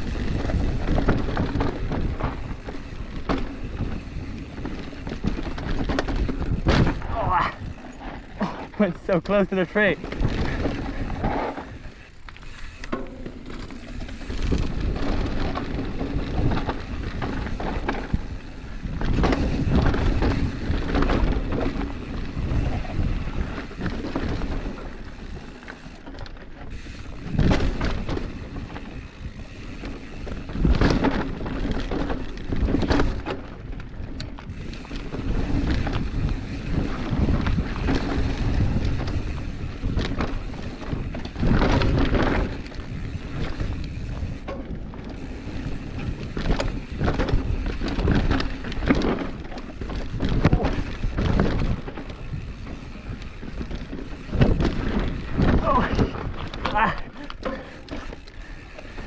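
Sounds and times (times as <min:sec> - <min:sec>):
bike rattling: 0:00.0 - 0:59.0
bike tyres rolling over dirt: 0:00.0 - 0:59.0
bike thumps from bumps: 0:00.4 - 0:07.2
wind on microphone: 0:34.5 - 0:57.1.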